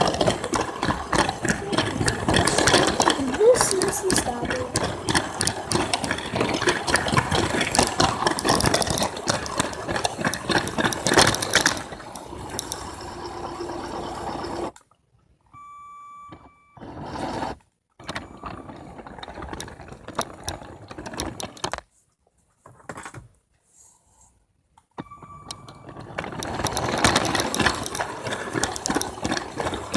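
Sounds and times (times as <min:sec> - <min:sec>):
rattling clicks: 0:00.0 - 0:14.7, 0:25.4 - 0:29.9.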